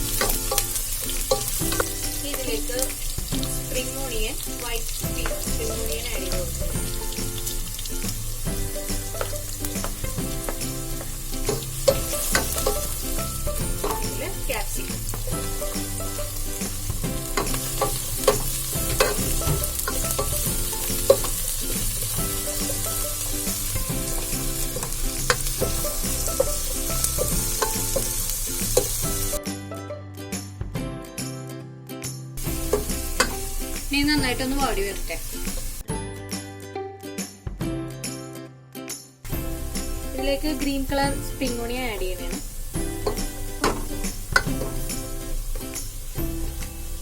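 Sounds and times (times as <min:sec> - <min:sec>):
spatula scraping a pan: 0:00.0 - 0:03.2, 0:08.7 - 0:29.4
vegetables sizzling in hot oil: 0:00.0 - 0:29.4, 0:32.4 - 0:35.9, 0:39.3 - 0:47.0.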